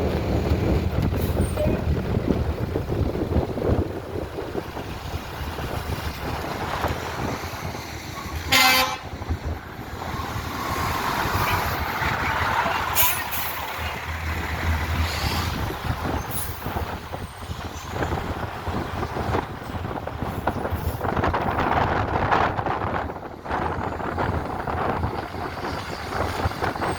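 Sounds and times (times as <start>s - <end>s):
street noise: 0.0s - 26.9s
wind on microphone: 0.0s - 26.9s
fire truck air horn: 8.4s - 9.2s.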